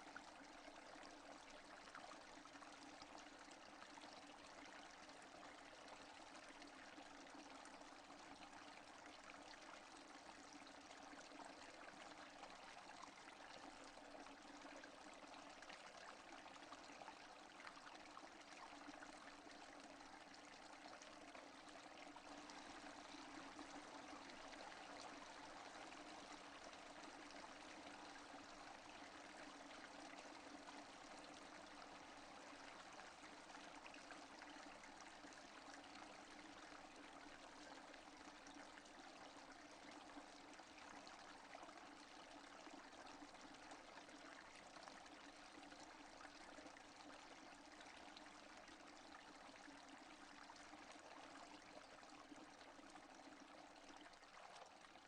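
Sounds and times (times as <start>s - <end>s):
faint steady rainfall: 0.0s - 0.8s.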